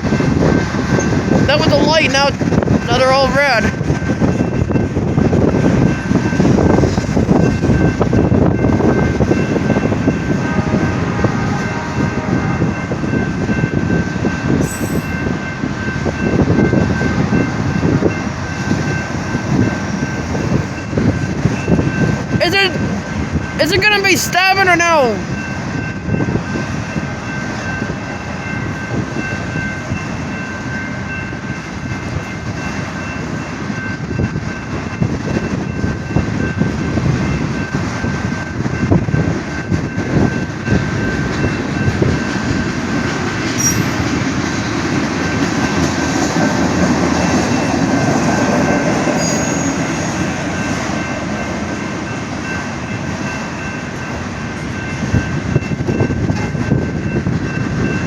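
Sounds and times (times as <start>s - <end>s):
steady high ringing tone: 12.5s - 23.8s, 43.6s - 44.2s, 49.2s - 58.0s
high wheel squeal: 14.6s - 15.3s, 43.6s - 44.2s, 49.1s - 50.2s
train wheels clattering on rails: 25.3s - 58.0s.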